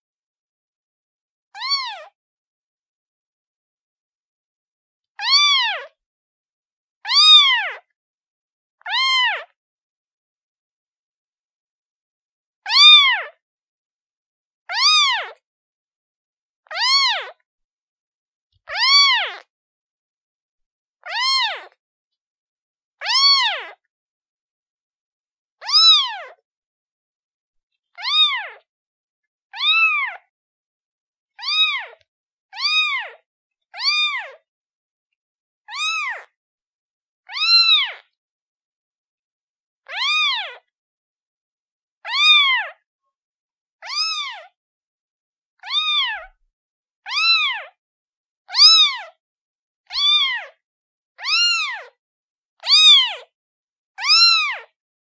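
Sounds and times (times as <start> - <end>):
kitten meowing: 1.6 - 2.1, 5.2 - 5.9, 7.1 - 7.8, 8.9 - 9.5, 12.7 - 13.2, 14.7 - 15.4, 16.7 - 17.4, 18.7 - 19.4, 21.1 - 21.8, 23.0 - 23.8, 25.6 - 26.4, 28.0 - 28.6, 29.6 - 30.3, 31.4 - 32.0, 32.6 - 33.2, 33.8 - 34.4, 35.7 - 36.3, 37.3 - 38.0, 39.9 - 40.6, 42.1 - 42.8, 43.8 - 44.5, 45.6 - 46.4, 47.1 - 47.8, 48.5 - 49.0, 49.9 - 50.5, 51.2 - 52.0, 52.6 - 53.2, 54.0 - 54.7.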